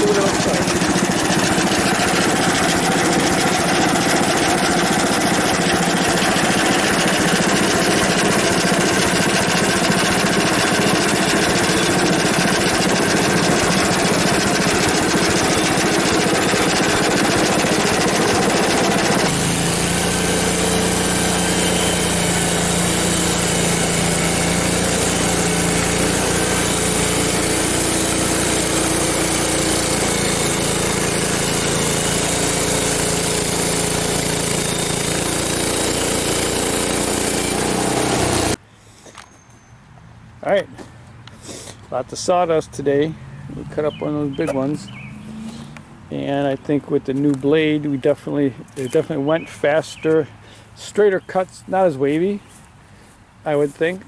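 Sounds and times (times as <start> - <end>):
saw blade cutting log: 0.0 - 38.6, 43.7 - 45.8
sawmill engine running: 0.0 - 38.6, 43.5 - 50.2.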